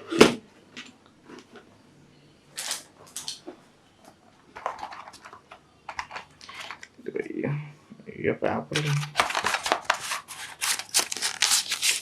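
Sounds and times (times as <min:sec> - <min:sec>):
cardboard packaging rustling: 0:04.5 - 0:07.0, 0:08.8 - 0:12.0.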